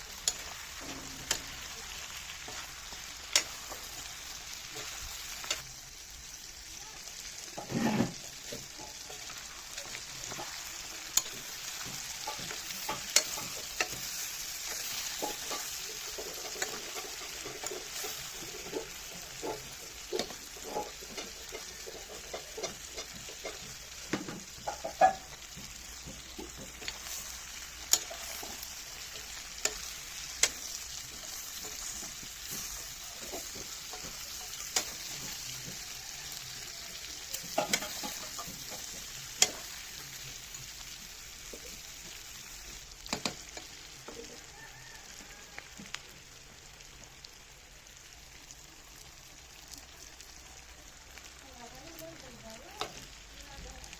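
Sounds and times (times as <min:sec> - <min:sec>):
food sizzling in oil: 0:00.0 - 0:53.9
spoon scraping a pan: 0:07.4 - 0:40.9.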